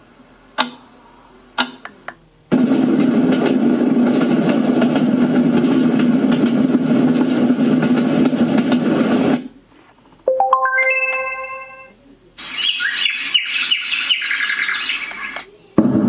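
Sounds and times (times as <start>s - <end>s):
rising chime-like notes: 10.3s - 11.9s
recorded birds chirping: 12.3s - 15.7s.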